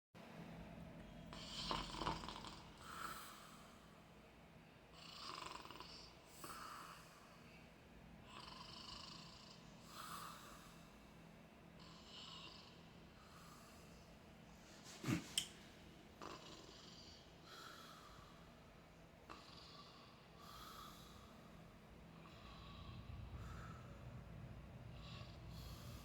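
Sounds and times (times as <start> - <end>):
soft snoring: 1.3 - 3.9, 4.9 - 7.5, 8.2 - 10.9, 11.8 - 14.0, 14.8 - 15.5, 16.2 - 18.5, 19.2 - 24.1, 24.8 - 26.0.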